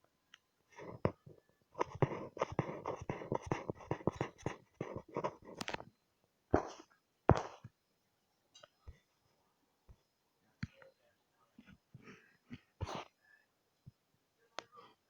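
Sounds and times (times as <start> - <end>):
drawing tool scratching on paper: 0.8 - 1.2, 1.8 - 5.7, 12.8 - 13.1.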